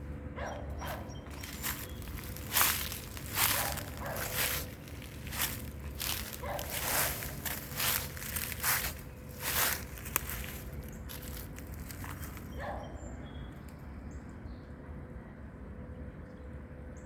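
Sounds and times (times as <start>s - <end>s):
footsteps outdoors: 0.5s - 12.9s.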